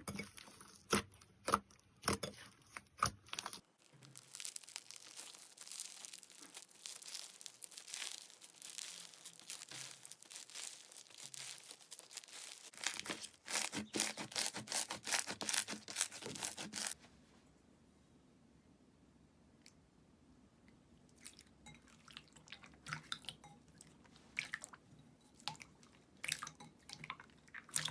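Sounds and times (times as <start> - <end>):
slime crackling: 3.8 - 17.0.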